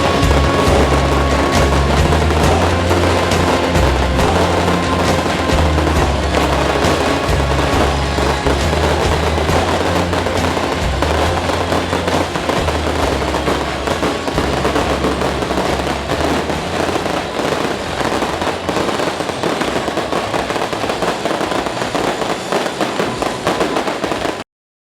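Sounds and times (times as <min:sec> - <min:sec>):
low hum of music: 0:00.0 - 0:18.7
fireworks crackling: 0:00.0 - 0:24.4.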